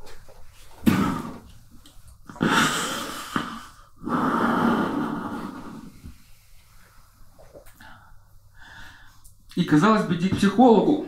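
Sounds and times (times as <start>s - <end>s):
man breathing hard into microphone: 7.8s - 9.3s.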